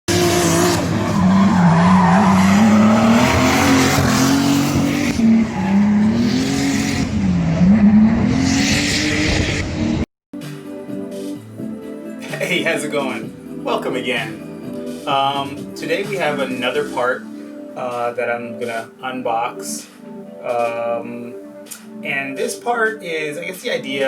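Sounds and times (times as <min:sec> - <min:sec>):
car engine revving: 0:00.1 - 0:10.1
tyres squealing: 0:00.9 - 0:04.7.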